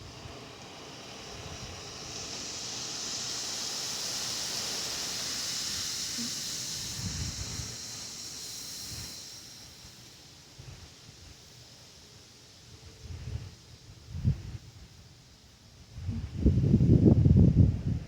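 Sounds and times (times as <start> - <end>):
wind gust hissing: 0.0 - 18.0
wind buffeting microphone: 6.7 - 9.2, 15.9 - 18.0.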